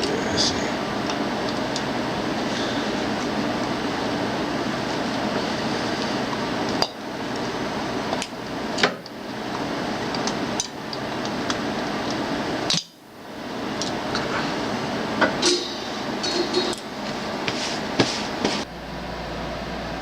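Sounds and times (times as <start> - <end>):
noisy background: 0.0 - 20.0
metal clanks and knocks: 15.2 - 16.9.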